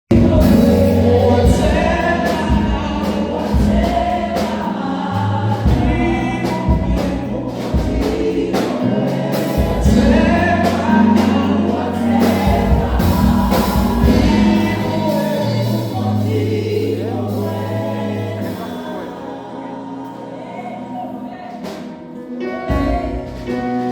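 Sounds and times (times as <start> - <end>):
gospel choir singing: 0.0 - 23.9
low bass notes: 0.1 - 18.6
drum beats: 0.1 - 19.1.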